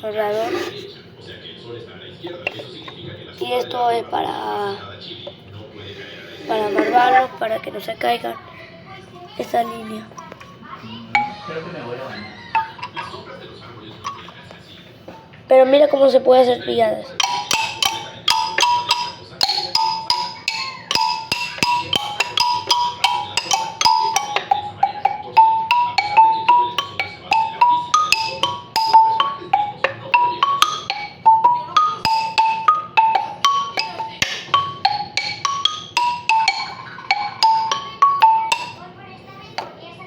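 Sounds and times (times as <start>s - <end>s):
marimba melody: 6.3s - 7.6s, 11.1s - 13.3s, 14.0s - 14.4s, 16.7s - 38.8s.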